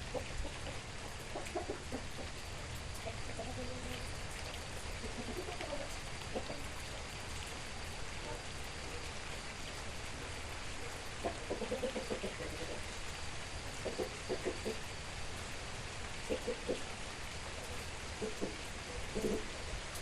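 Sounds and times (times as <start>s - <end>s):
water drips: 0.0s - 14.8s
steady rain: 0.0s - 20.0s
chicken clucking: 0.1s - 4.1s, 4.9s - 6.7s, 11.2s - 12.8s, 13.8s - 14.8s, 16.2s - 16.9s, 18.2s - 19.6s.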